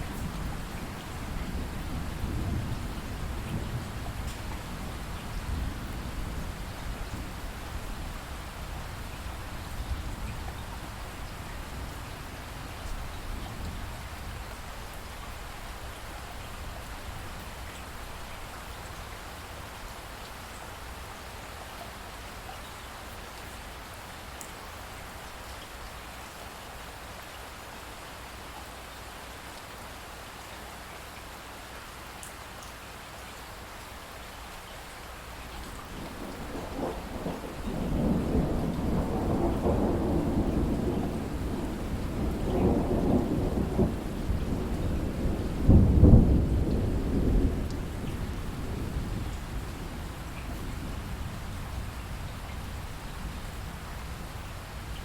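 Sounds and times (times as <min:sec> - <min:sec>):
steady rainfall: 0:00.0 - 0:55.0
thunder rumbling: 0:35.8 - 0:55.0.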